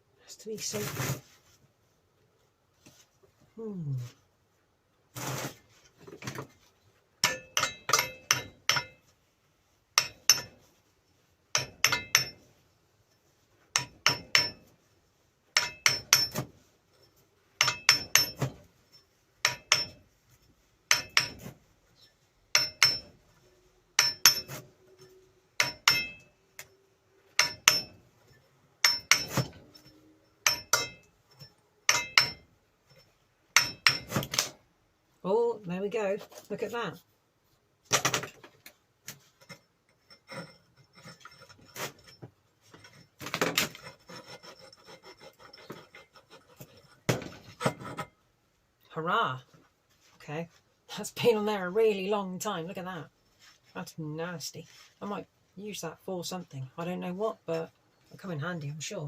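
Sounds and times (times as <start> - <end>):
hammer striking metal plate: 7.2 - 9.0, 10.0 - 10.5, 11.6 - 12.4, 13.8 - 14.6, 15.6 - 16.4, 17.6 - 18.5, 19.4 - 20.0, 20.9 - 21.5, 22.5 - 23.1, 24.0 - 24.6, 25.6 - 26.3, 27.4 - 28.0, 28.8 - 29.5, 30.4 - 31.1, 31.9 - 32.5, 33.6 - 34.3.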